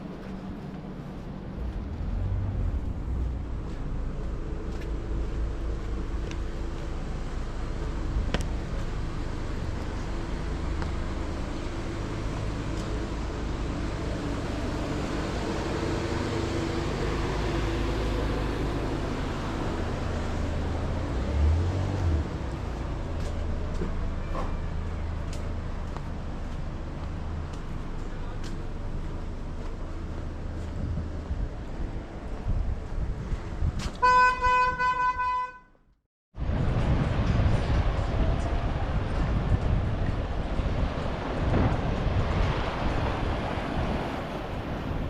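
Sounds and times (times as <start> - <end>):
engine hum: 0.0 - 35.4.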